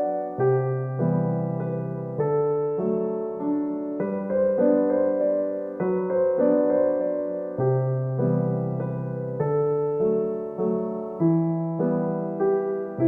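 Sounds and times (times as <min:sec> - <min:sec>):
gentle piano tune: 0:00.0 - 0:13.0.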